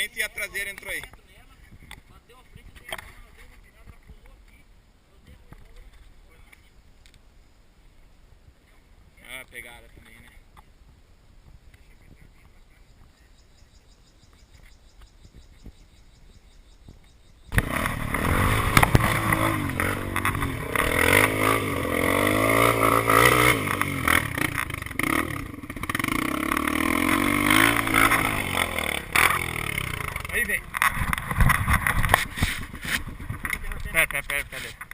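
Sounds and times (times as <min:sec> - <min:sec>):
motorcycle engine revving: 0:17.5 - 0:34.4.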